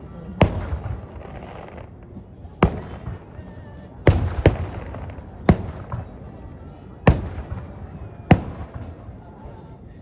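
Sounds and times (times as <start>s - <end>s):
fireworks bursting with echo: 0.0s - 9.9s.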